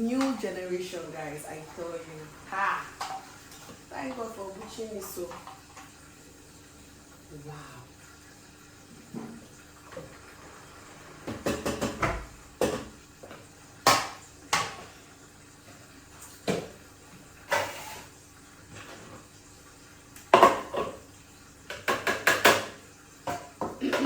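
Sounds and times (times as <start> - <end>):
pots and utensils clattering: 0.0 - 6.0, 9.0 - 19.3, 20.3 - 24.0.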